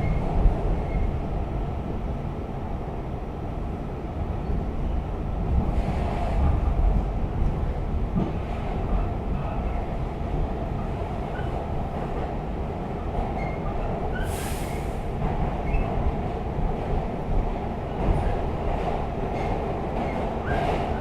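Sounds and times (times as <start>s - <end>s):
subway car rumbling on track: 0.0s - 21.0s
brief hiss: 14.3s - 15.1s.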